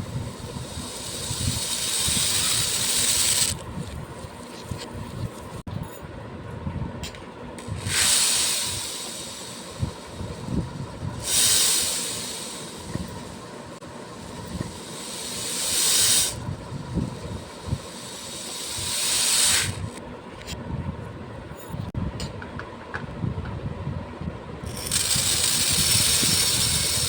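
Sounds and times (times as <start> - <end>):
beads being poured: 17.8 - 19.9.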